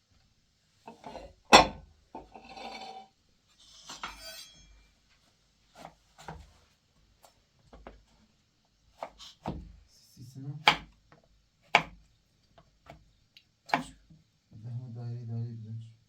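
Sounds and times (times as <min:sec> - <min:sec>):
scraping and rubbing of objects: 0:00.9 - 0:04.8.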